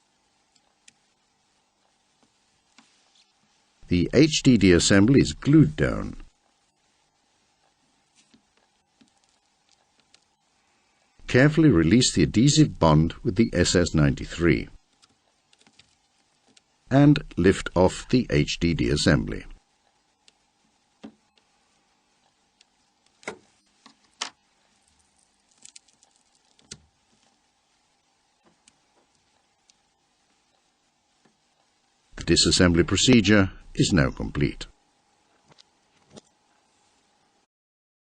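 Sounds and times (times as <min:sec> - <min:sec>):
faint hiss: 0:00.0 - 0:37.5.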